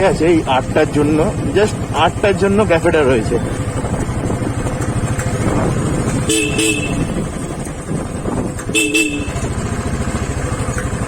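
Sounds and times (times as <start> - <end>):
motorcycle engine running: 0.0 - 11.0
vehicle horn honks: 6.2 - 7.3, 8.7 - 9.6.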